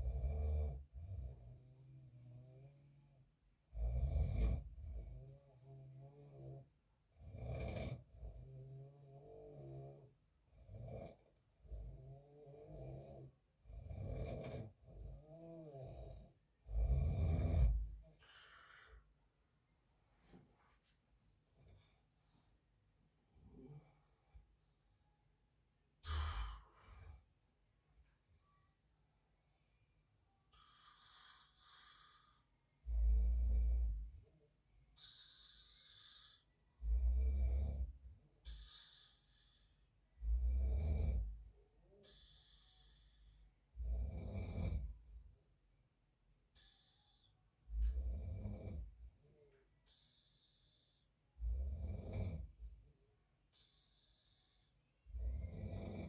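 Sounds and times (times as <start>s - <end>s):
man snoring: 0.0s - 3.1s, 3.7s - 6.6s, 7.2s - 18.2s, 30.6s - 34.2s, 35.0s - 41.4s, 42.0s - 45.0s, 47.7s - 49.0s, 51.4s - 52.7s, 53.6s - 56.0s
soft breath: 17.6s - 25.2s, 26.0s - 28.9s, 29.7s - 34.2s, 34.9s - 43.9s, 46.4s - 48.2s, 48.8s - 51.7s, 53.4s - 55.4s.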